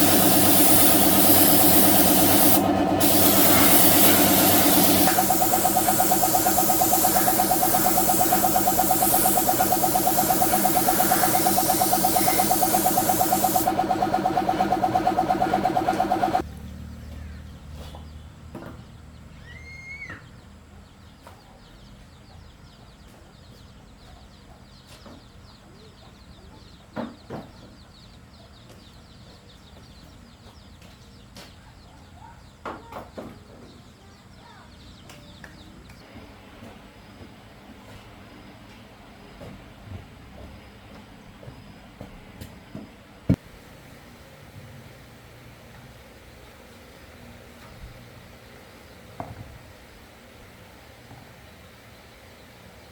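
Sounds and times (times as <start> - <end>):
bird chirp: 0.0 - 16.4
machine motor pulsing: 0.0 - 16.4
spraying hiss of air: 0.0 - 16.4.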